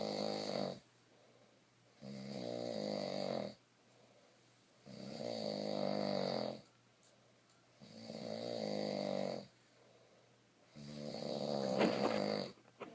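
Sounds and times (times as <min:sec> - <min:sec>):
person snoring: 0:00.0 - 0:00.8, 0:02.0 - 0:03.6, 0:04.8 - 0:06.7, 0:07.8 - 0:09.5, 0:10.7 - 0:12.6.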